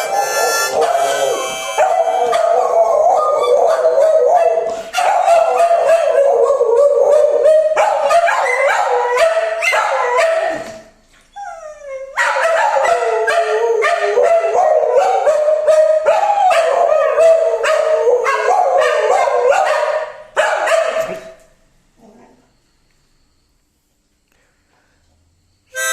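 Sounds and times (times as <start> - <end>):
harmonica playing rapid chords: 0.0 - 2.9
dogs howling: 0.0 - 10.6, 11.4 - 19.9.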